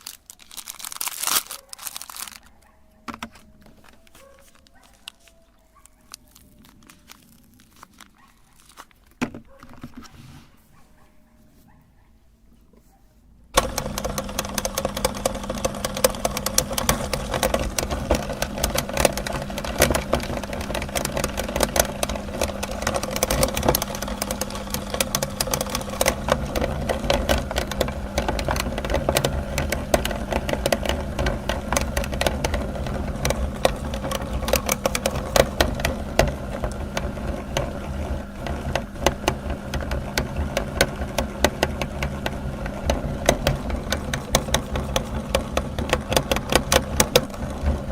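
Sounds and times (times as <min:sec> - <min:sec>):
grinder motor hum: 0:00.0 - 0:09.9, 0:13.6 - 0:47.9
crackling and rattling of grinding: 0:00.0 - 0:10.2, 0:13.6 - 0:47.9.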